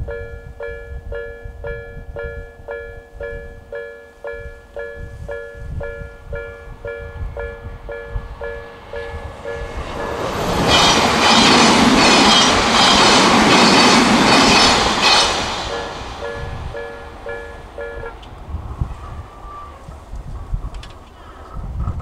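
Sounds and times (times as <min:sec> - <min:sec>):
train passing rumble: 0:00.1 - 0:22.0
level crossing alarm chiming: 0:14.6 - 0:18.2.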